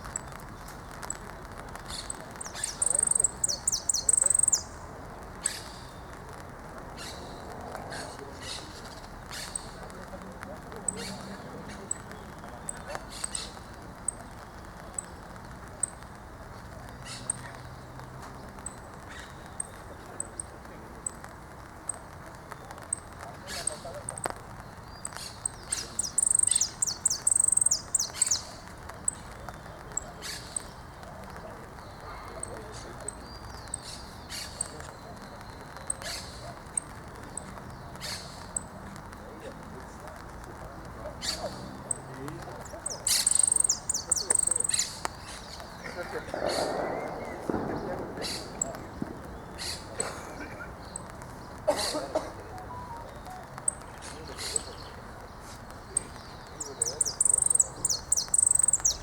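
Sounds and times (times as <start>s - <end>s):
bird chirping: 0.0s - 6.1s, 22.7s - 31.0s, 41.2s - 45.8s, 52.5s - 59.0s
finch singing trills: 1.8s - 4.8s, 24.9s - 30.7s, 42.8s - 45.8s, 52.5s - 55.0s, 55.9s - 59.0s.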